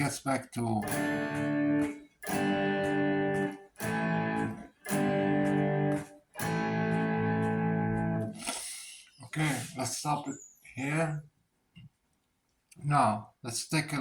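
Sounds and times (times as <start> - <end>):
fuzz electric guitar chords: 0.8 - 8.4.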